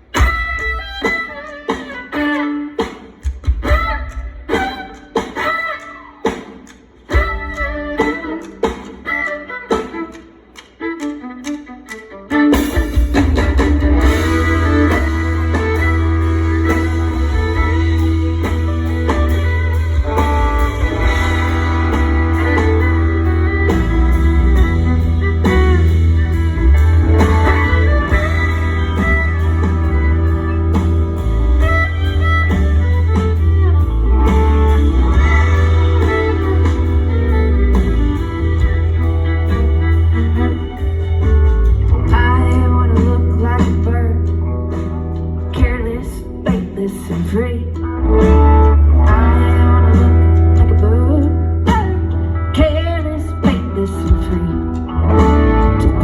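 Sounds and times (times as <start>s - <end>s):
live band playing: 0.0s - 56.0s
picked guitar notes: 0.0s - 56.0s
heavy booming bass: 13.2s - 46.0s.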